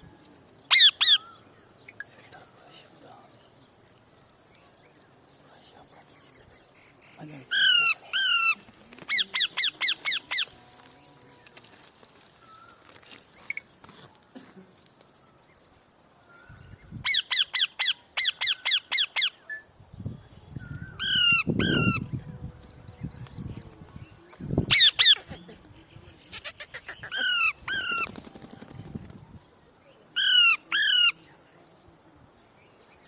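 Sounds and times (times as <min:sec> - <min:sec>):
high-pitched insect drone: 0:00.0 - 0:33.0
parrot chirping: 0:00.7 - 0:01.3, 0:21.0 - 0:22.0, 0:24.7 - 0:25.2, 0:26.4 - 0:28.1.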